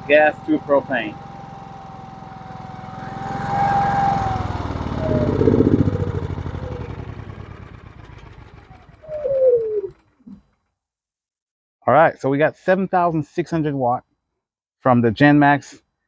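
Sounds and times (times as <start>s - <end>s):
generator engine winding down: 0.0s - 10.6s.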